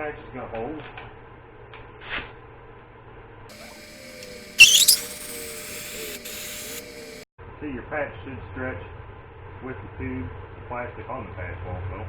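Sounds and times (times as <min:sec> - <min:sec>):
compressed air hissing: 0:03.5 - 0:07.2
shrill squeal: 0:03.5 - 0:07.2.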